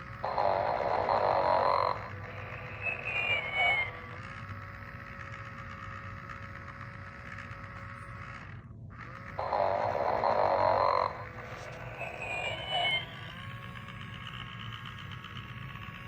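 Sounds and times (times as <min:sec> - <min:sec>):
faint steady hum: 0:00.0 - 0:16.0
toy snoring through speaker: 0:00.0 - 0:16.0
warbling whistle: 0:00.2 - 0:04.2, 0:11.4 - 0:13.8.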